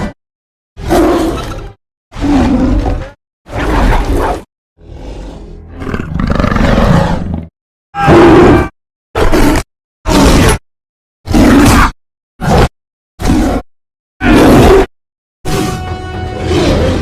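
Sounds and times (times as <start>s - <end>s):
demonic monster roars: 8.0s - 10.6s.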